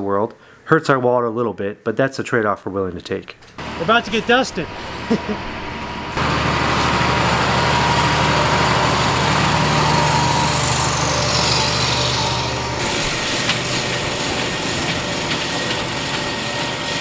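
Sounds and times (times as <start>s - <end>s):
engine high whine: 3.4s - 17.0s
machine engine low hum: 3.4s - 17.0s.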